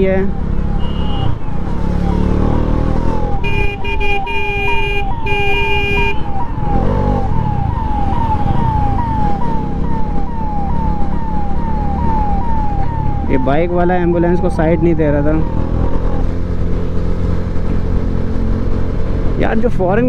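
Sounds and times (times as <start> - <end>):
ambulance siren wailing: 0.0 - 16.4
road and wind noise: 0.0 - 20.0
vehicle horn honking: 0.8 - 1.4, 3.4 - 6.3.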